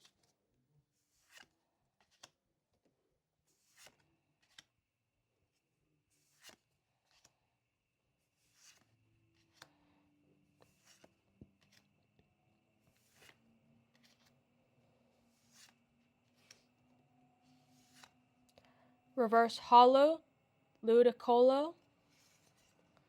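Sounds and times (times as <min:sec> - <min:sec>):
trading cards rustling and clicking: 0:01.1 - 0:04.8, 0:06.2 - 0:07.4, 0:08.3 - 0:18.7, 0:22.0 - 0:23.0.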